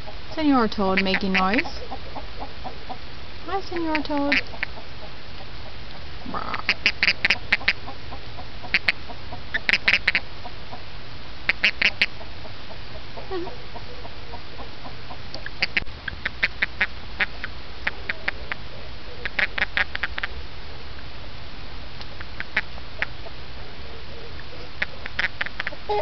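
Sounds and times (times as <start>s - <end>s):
toad chirping: 0.3s - 4.9s, 6.3s - 10.2s, 13.2s - 20.4s, 22.1s - 23.3s, 24.1s - 26.0s.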